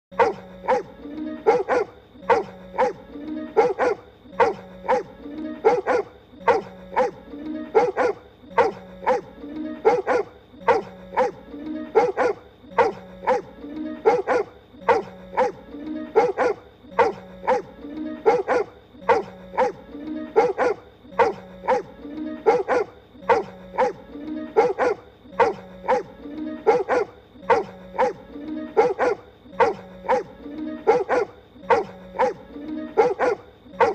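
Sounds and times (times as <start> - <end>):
background music: 0.1 - 33.9
cartoon voice barking like a dog: 16.2 - 17.7.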